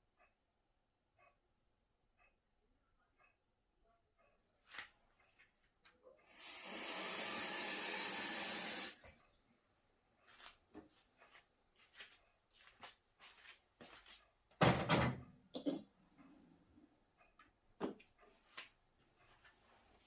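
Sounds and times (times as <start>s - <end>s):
water tap running: 6.3s - 9.0s.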